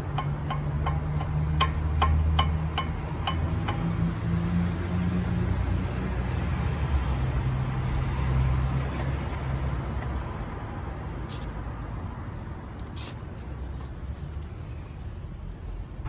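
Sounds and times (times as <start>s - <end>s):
vehicle engine humming: 0.0s - 16.0s.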